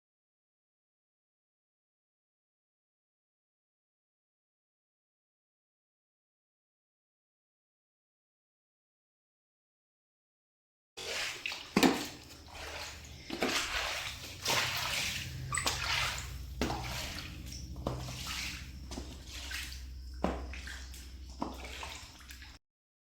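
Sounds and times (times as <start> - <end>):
water sloshing and splashing: 11.0 - 22.6
faint steady low hum: 12.0 - 22.6.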